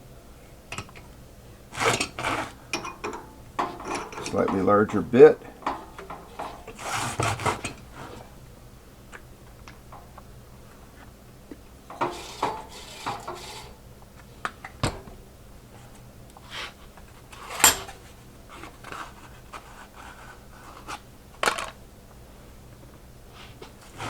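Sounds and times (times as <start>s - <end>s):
metal tools being handled: 1.8s - 8.3s, 11.9s - 13.8s.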